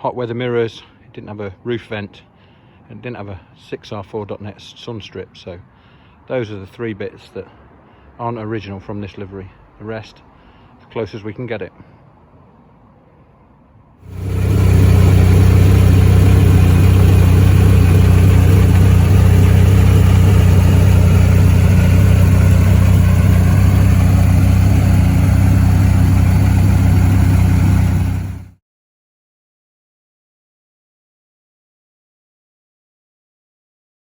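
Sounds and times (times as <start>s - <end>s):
loud rally engine running: 14.1s - 28.6s.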